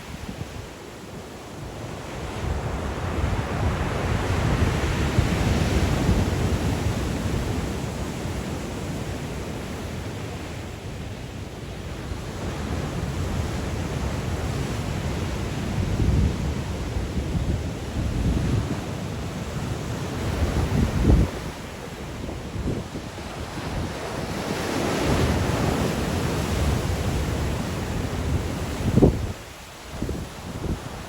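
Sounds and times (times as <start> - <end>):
wind rumbling on microphone: 0.0 - 31.0
surf breaking on shore: 16.4 - 31.0.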